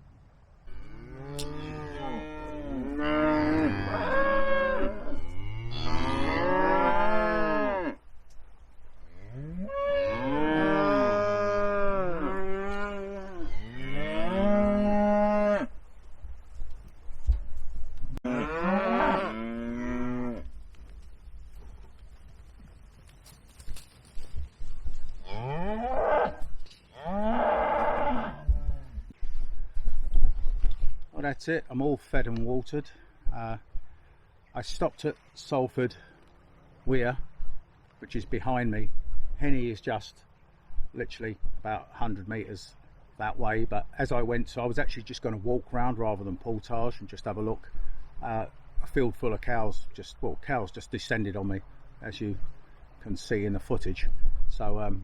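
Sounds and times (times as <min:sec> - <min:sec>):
cattle mooing: 0:00.7 - 0:08.0, 0:09.3 - 0:15.7, 0:18.2 - 0:20.5, 0:25.3 - 0:26.4, 0:27.0 - 0:28.9.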